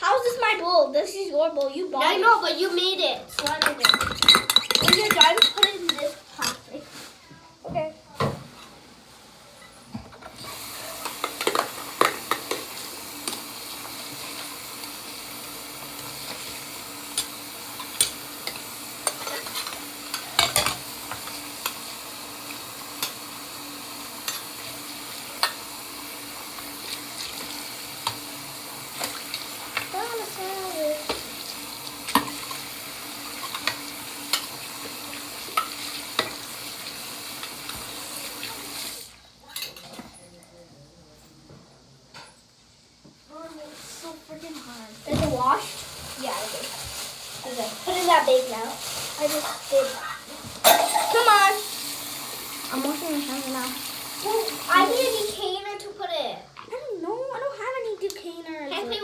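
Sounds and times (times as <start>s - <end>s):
tap water running into sink: 3.4s - 6.1s, 10.2s - 39.2s, 47.4s - 55.5s.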